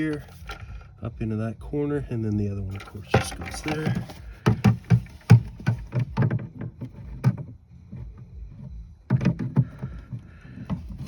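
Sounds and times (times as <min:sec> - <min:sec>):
plastic trim panel knocking: 0:02.8 - 0:07.5, 0:09.1 - 0:11.0.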